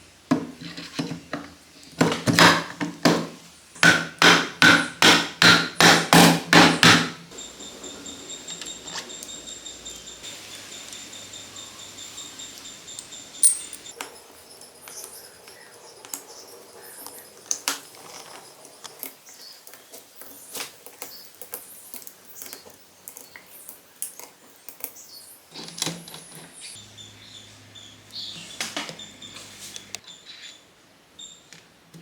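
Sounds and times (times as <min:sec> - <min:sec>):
metal parts and tools clinking: 0:13.4 - 0:13.9.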